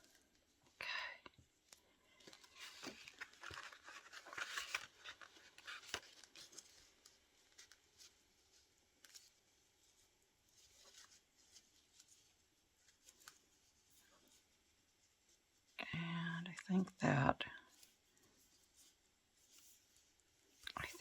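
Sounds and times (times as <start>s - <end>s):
paper being handled: 2.2s - 15.7s.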